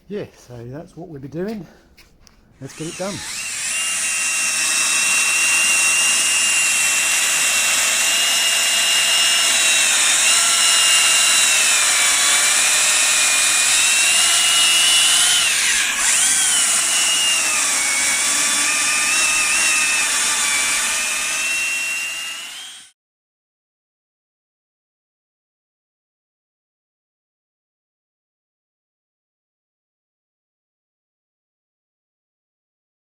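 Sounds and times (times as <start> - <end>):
battery chainsaw cutting wood: 2.6 - 22.9.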